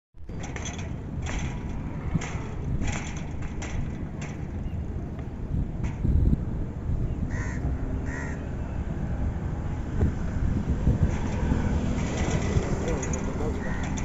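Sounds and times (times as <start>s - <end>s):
steady low rumble: 0.2s - 14.0s
crow cawing: 7.3s - 8.4s, 13.6s - 13.9s.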